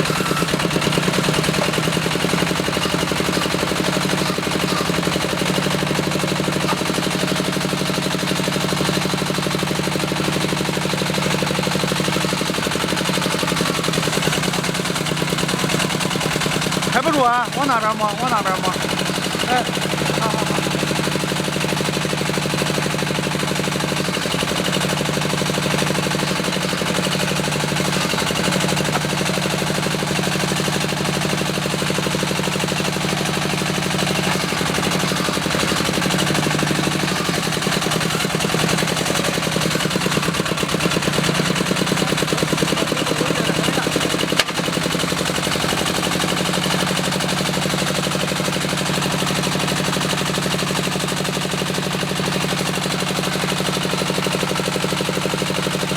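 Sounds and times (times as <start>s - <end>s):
diesel engine knocking steadily: 0.0s - 55.9s.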